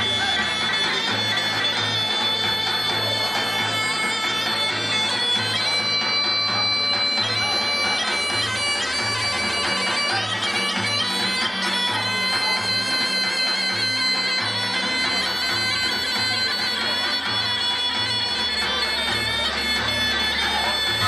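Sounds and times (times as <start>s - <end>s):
reedy wind instrument melody: 0.0s - 21.0s.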